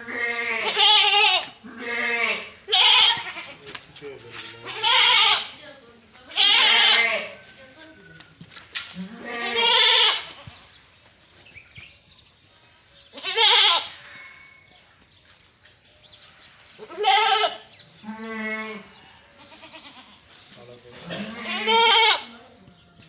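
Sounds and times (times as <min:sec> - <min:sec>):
goats bleating: 0:00.0 - 0:05.6, 0:06.3 - 0:07.4, 0:08.9 - 0:10.5, 0:13.2 - 0:13.9, 0:16.8 - 0:20.2, 0:21.0 - 0:22.3.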